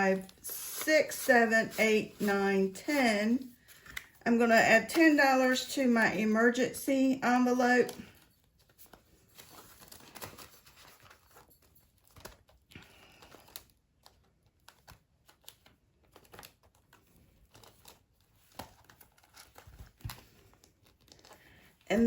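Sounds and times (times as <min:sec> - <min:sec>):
paper bills and envelope rustling: 0:00.0 - 0:22.0.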